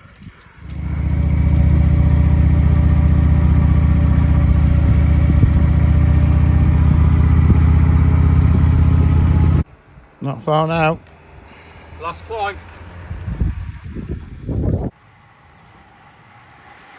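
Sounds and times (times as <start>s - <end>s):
motorcycle engine running: 0.6s - 9.6s.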